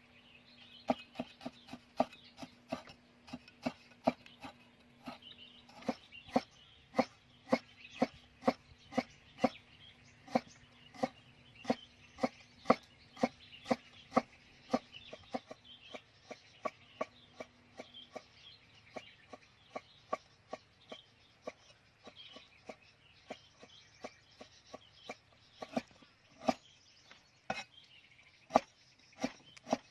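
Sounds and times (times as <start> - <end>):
knife chopping on wooden board: 0.9 - 9.6, 10.3 - 18.3, 25.1 - 26.6, 28.5 - 29.9.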